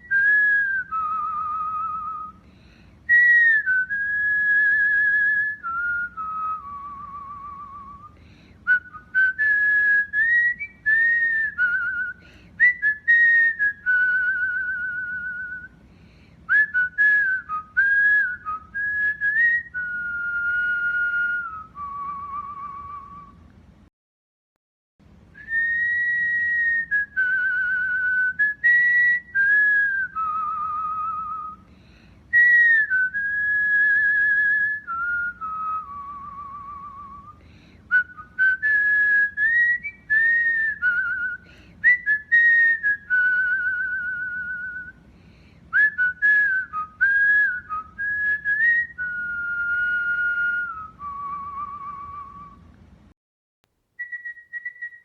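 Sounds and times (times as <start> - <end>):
cockatiel whistling: 54.0 - 55.0.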